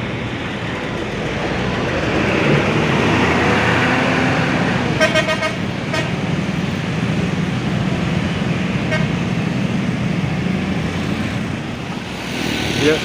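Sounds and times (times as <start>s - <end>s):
bus passing: 0.0s - 13.0s
bus horn toots: 4.9s - 6.2s, 8.8s - 9.2s.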